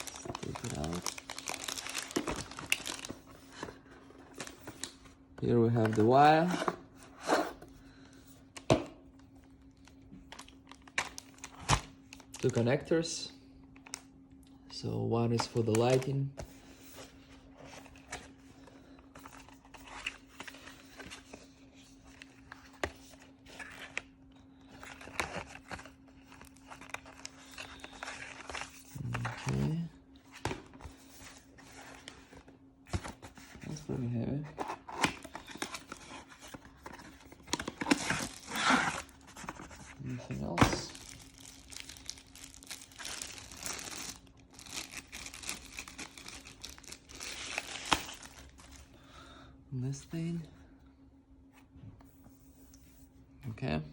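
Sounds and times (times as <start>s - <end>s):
plastic packaging crinkling: 0.0s - 5.0s, 35.0s - 48.9s
faint steady hum: 0.0s - 53.9s.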